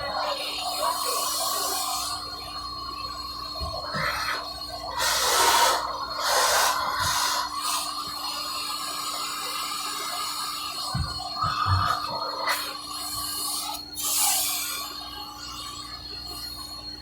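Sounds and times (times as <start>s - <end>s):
vacuum motor hum and whine: 0.0s - 17.0s
rushes of sucked air: 4.0s - 7.6s.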